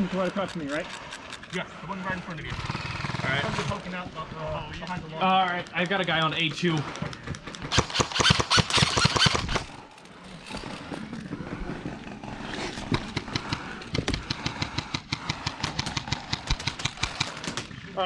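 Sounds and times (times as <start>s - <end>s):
airsoft guns firing: 7.7s - 9.9s, 14.3s - 17.6s.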